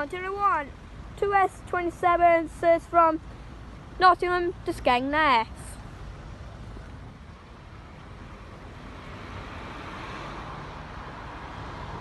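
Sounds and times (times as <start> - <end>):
vehicle approaching: 5.5 - 12.0.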